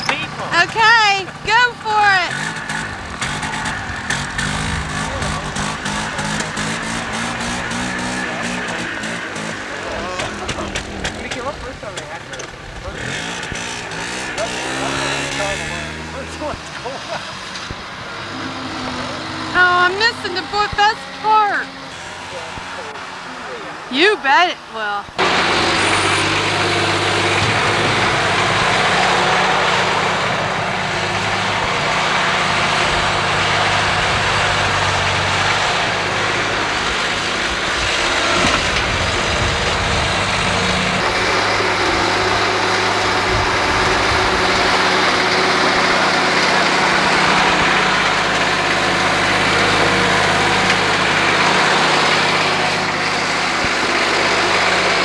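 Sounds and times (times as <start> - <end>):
engine running: 0.0 - 55.0.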